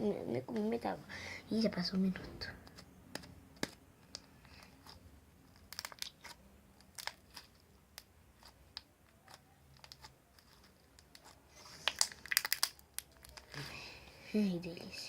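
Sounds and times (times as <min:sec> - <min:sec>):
small clicks and crackles: 0:03.2 - 0:13.6.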